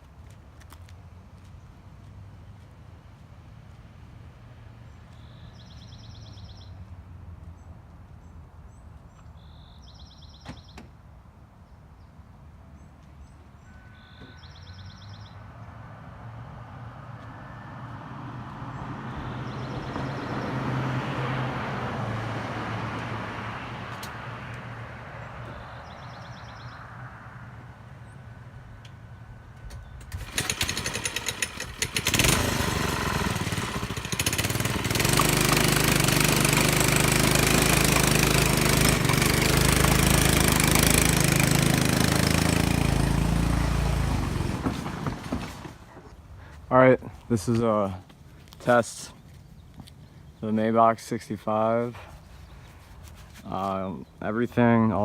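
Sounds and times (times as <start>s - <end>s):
birds chirping: 4.9s - 10.9s, 11.7s - 15.7s, 18.6s - 20.8s, 25.1s - 27.1s, 45.9s - 55.0s
vehicle passing: 14.5s - 49.1s
small engine starting and running: 29.7s - 45.9s.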